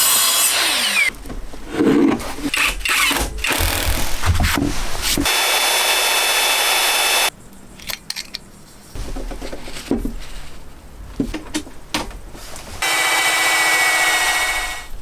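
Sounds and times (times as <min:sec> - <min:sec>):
power tool high whine: 0:05.3 - 0:07.3, 0:12.8 - 0:14.9
handling knocks and clicks: 0:11.0 - 0:12.4.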